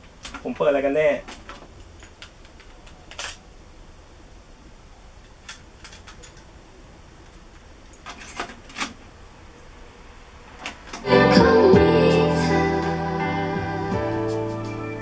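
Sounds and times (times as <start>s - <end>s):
music from cassette: 11.1s - 15.0s.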